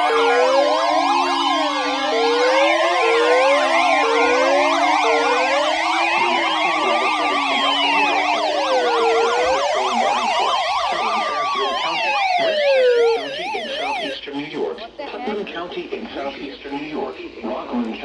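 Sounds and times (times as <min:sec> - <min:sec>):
siren fast yelp: 0:00.0 - 0:14.2
siren slow wail: 0:00.0 - 0:14.2
weather radio alert tone: 0:00.0 - 0:14.2.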